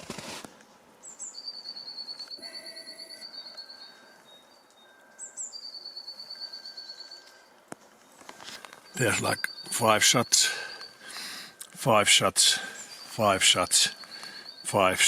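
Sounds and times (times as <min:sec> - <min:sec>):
songbird trilling: 0:08.7 - 0:11.4, 0:12.0 - 0:15.0.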